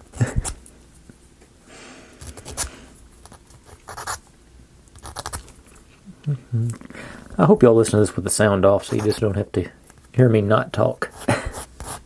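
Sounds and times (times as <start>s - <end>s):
sandpaper rubbing wood: 8.9s - 9.2s.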